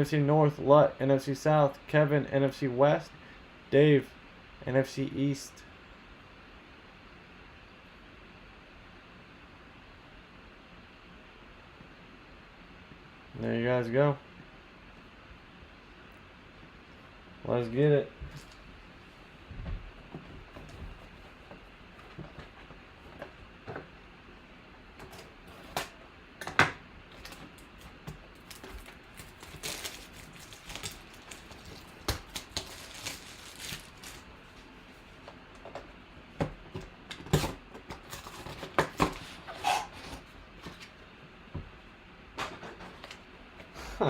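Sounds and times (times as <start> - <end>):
packaging rustling and crinkling: 27.1 - 34.7, 38.0 - 40.9.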